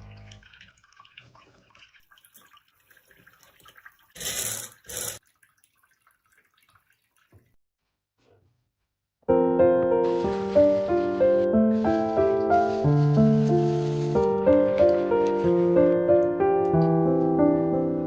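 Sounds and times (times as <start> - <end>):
short gushes of splashing water: 0.0 - 7.6.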